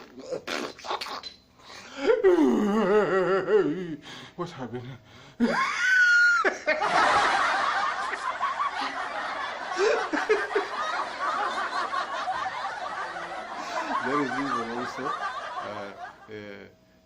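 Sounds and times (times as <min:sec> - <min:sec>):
crowd laughing: 0:06.4 - 0:16.3.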